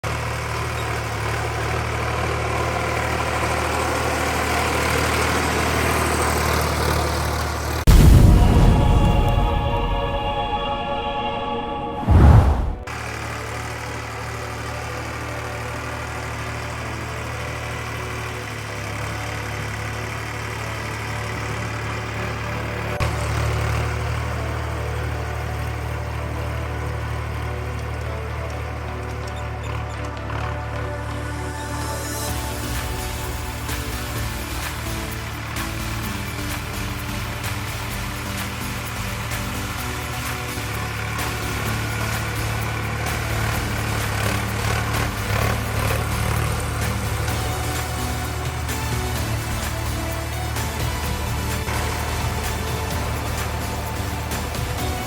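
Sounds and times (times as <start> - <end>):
diesel tractor engine running: 0.0 - 55.0
bass-heavy sound: 7.5 - 13.5, 28.9 - 55.0.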